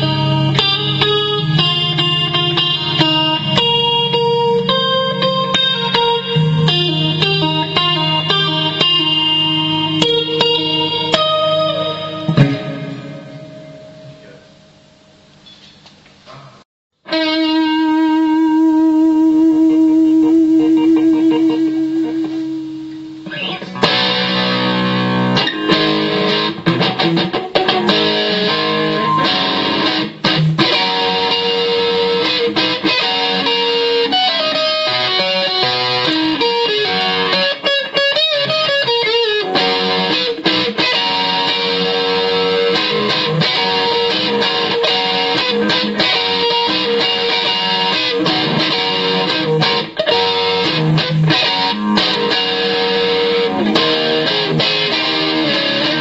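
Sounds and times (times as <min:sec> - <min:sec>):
electric guitar playing: 0:00.0 - 0:15.4, 0:17.0 - 0:56.0.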